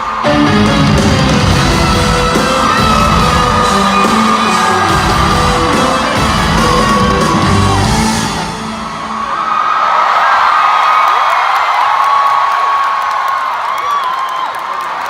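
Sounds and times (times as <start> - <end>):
crowd yelling and whooping: 0.0 - 15.0
live pop music with singing: 0.1 - 9.0.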